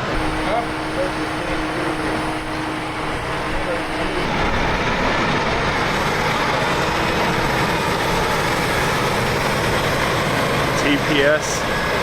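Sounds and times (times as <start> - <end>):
heavy diesel equipment running: 0.0 - 12.0.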